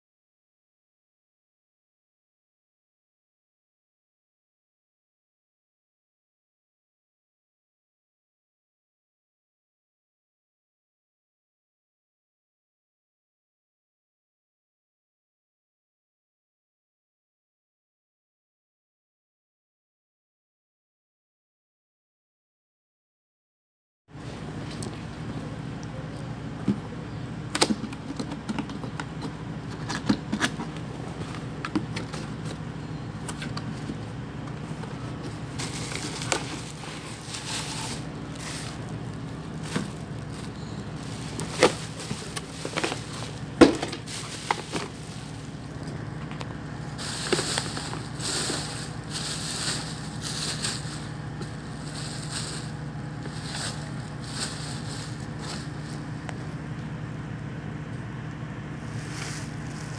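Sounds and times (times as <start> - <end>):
steady low hum: 24.1 - 59.9
packaging crinkling: 35.4 - 45.8, 47.0 - 56.2.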